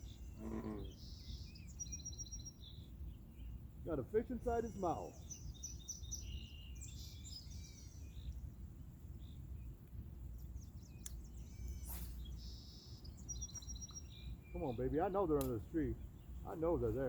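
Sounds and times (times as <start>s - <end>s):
small birds chirping: 0.0s - 17.0s
low outdoor rumble: 6.6s - 17.0s.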